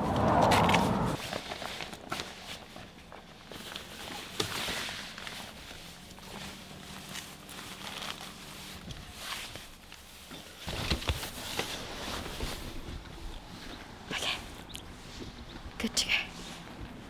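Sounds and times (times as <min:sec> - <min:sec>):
low rumble: 0:00.0 - 0:01.2.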